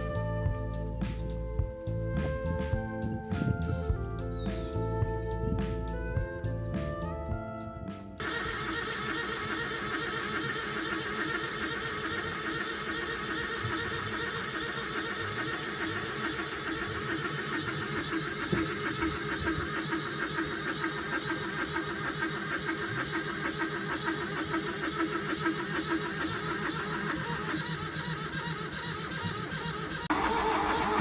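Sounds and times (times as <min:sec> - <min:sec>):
diesel engine running: 0:08.2 - 0:31.0.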